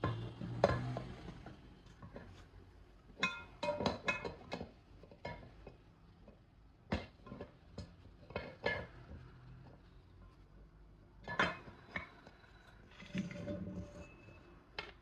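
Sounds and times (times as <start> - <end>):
metal clinks and taps: 3.2 - 6.4.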